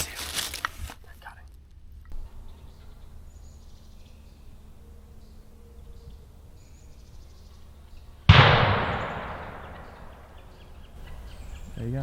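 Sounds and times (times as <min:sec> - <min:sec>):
faint bird calls and trills: 0:01.0 - 0:12.0
steady low rumble: 0:08.1 - 0:11.5.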